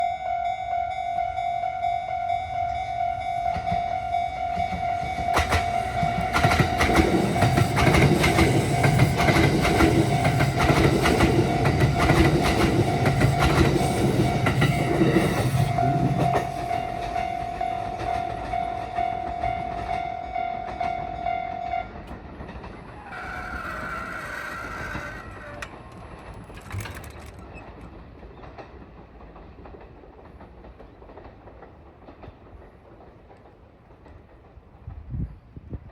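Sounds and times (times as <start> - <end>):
level crossing warning bell: 0.0 - 22.1
train wheels clattering over rail joints: 4.6 - 17.4, 22.0 - 34.5.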